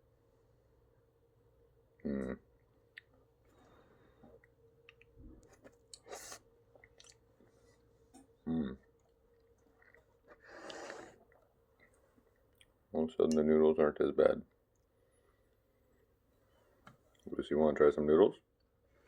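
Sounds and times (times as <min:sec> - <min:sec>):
faint chewing of noodles: 0:02.2 - 0:13.4.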